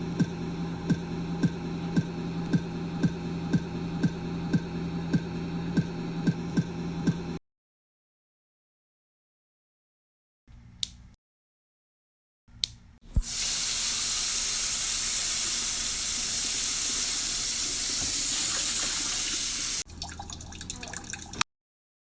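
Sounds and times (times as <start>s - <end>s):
tap water running into sink: 13.2s - 21.4s.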